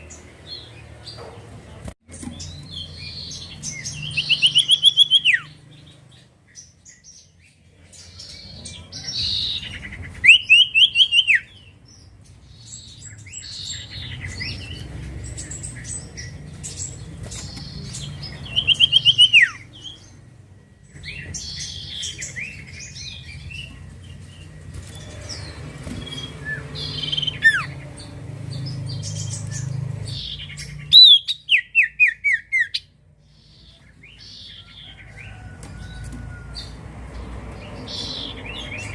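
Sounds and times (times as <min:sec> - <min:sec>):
bird trilling: 0:02.4 - 0:05.6, 0:15.7 - 0:20.2, 0:24.5 - 0:28.1, 0:28.9 - 0:32.9
bird chirps and whistles: 0:04.2 - 0:05.5, 0:10.2 - 0:11.5.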